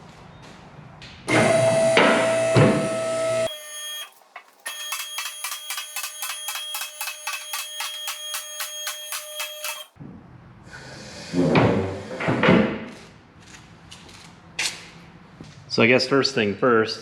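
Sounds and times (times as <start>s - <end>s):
loud steady tone: 1.3s - 9.9s.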